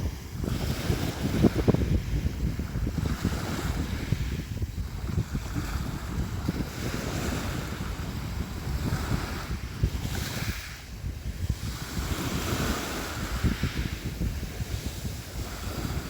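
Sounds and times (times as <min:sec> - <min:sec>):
sea waves washing and splashing: 0:00.0 - 0:16.0
wind buffeting microphone: 0:00.0 - 0:16.0.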